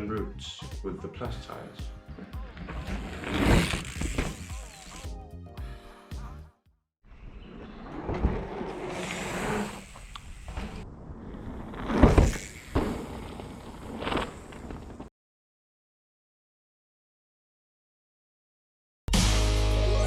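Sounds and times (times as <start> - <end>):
bike tyres rolling over dirt: 2.1 - 5.1, 7.4 - 15.1
bike rattling: 2.2 - 5.1, 7.7 - 15.1.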